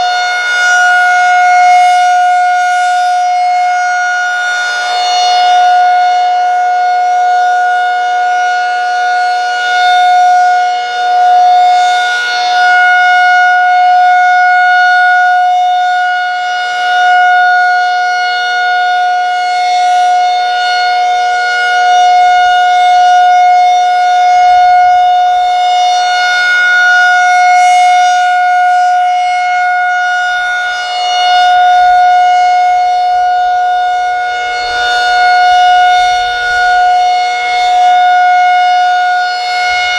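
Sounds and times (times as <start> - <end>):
warning siren steady pitch: 0.0 - 39.9.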